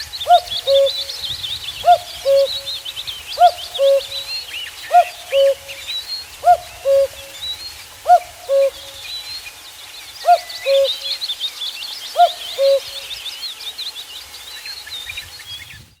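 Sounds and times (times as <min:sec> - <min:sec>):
cuckoo calling: 0:00.0 - 0:09.3, 0:10.2 - 0:11.4, 0:12.1 - 0:13.2
small birds chirping: 0:00.0 - 0:16.0.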